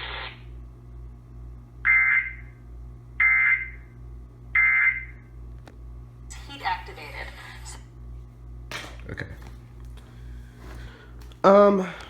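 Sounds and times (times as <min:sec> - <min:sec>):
digital screeches from tv speaker: 0:00.0 - 0:00.4.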